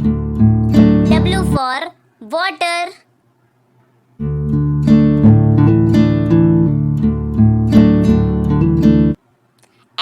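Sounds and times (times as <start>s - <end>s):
instrumental music with held chords: 0.0s - 1.5s, 4.2s - 9.2s.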